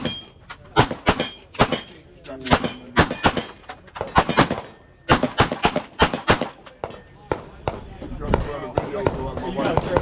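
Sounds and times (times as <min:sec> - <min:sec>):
rapid gunfire: 0:04.2 - 0:06.6.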